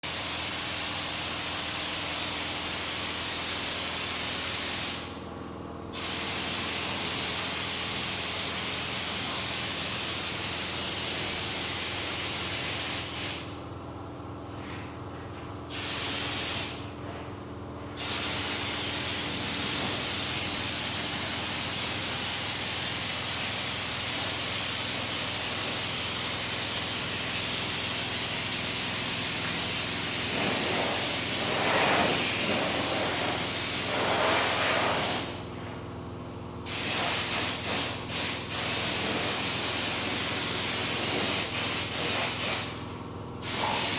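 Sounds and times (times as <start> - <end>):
compressed air hissing: 4.5 - 5.1, 5.9 - 13.6, 15.7 - 16.8, 18.0 - 35.4, 36.7 - 42.8, 43.4 - 43.9.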